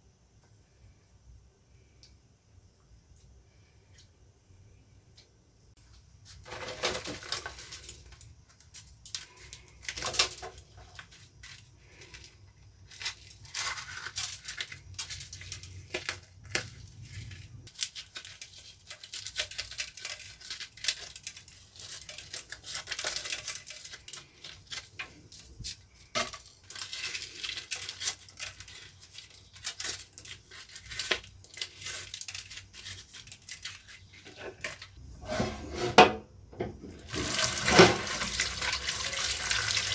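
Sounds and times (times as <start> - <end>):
hands crumpling dry material: 6.3 - 35.0.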